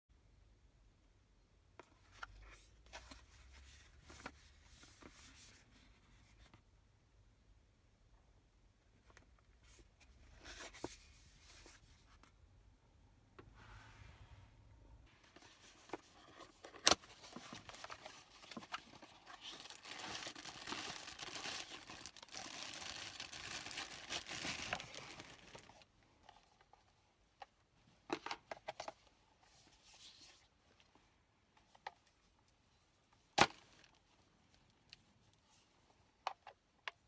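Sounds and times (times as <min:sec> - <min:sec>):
rustling and scraping handling: 0:01.8 - 0:06.6, 0:09.0 - 0:12.4, 0:15.1 - 0:33.3.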